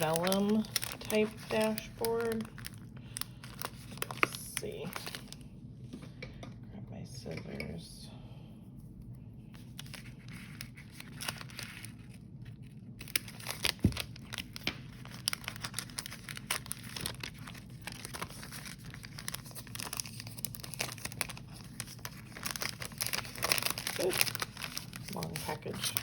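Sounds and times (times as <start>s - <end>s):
scissors cutting package: 0.0s - 5.4s, 13.0s - 26.0s
wrapping crinkling and tearing: 0.0s - 5.5s, 9.5s - 26.0s.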